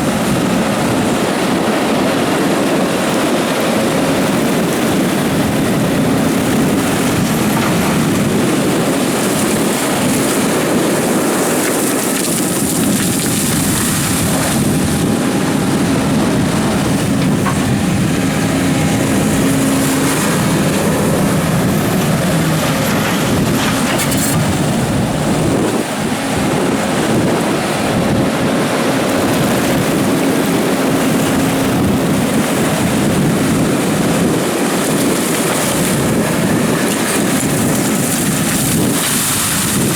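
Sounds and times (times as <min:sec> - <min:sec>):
hydraulic hum: 0:00.0 - 0:39.9
excavator diesel engine: 0:12.2 - 0:34.7.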